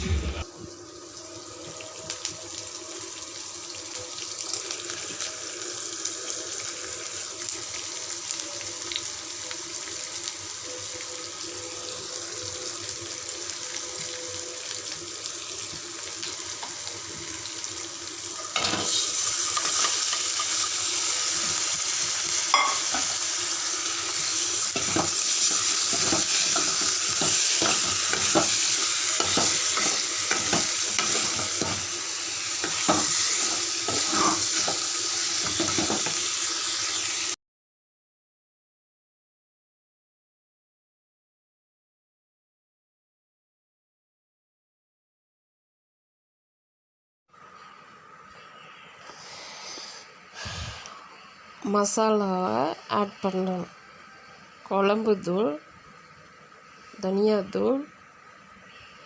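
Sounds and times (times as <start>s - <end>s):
vegetables sizzling in oil: 0.0s - 37.4s
spatula knocking and scraping pan: 24.7s - 31.9s, 32.6s - 34.8s, 35.4s - 36.2s.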